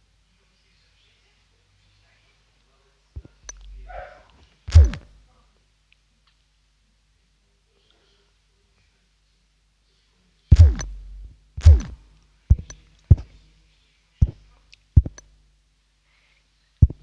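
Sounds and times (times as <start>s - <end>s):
electronic drum thumps: 4.7s - 5.0s, 10.5s - 13.3s
electronic drum booms: 4.7s - 5.1s, 10.5s - 13.3s.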